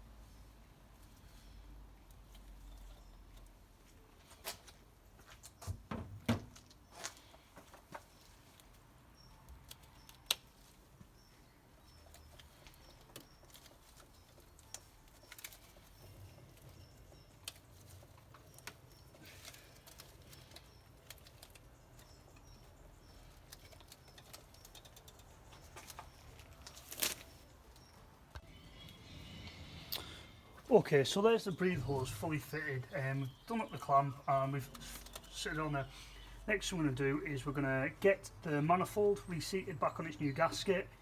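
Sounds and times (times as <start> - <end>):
hand tools clicking and knocking: 12.0 - 26.8.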